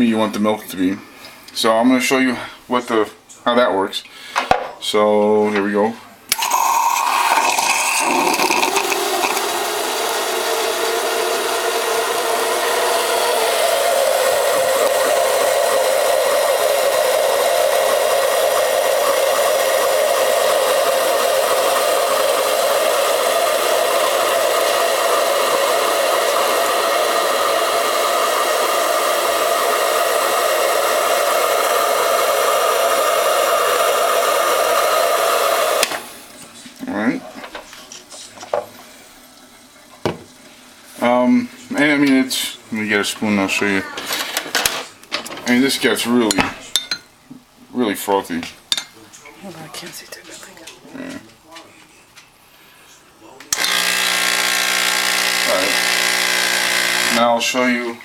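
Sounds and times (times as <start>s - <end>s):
steam wand frothing milk: 6.3s - 36.4s, 53.5s - 57.9s.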